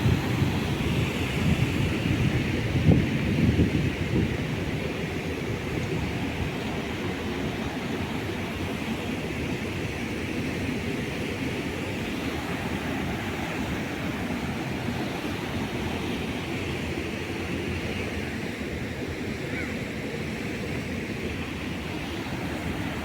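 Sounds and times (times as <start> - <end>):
wind buffeting microphone: 0.0 - 8.7
floodwater rushing: 20.8 - 23.0.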